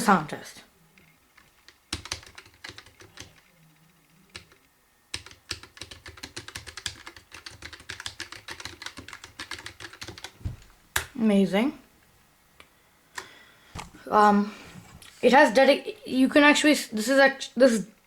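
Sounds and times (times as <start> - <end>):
mechanical keyboard typing: 1.4 - 3.5, 4.3 - 10.4.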